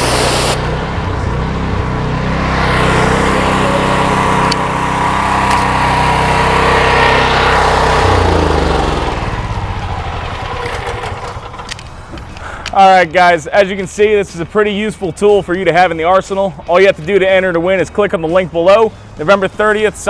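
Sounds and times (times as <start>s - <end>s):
pressure washer engine running: 0.0s - 12.6s.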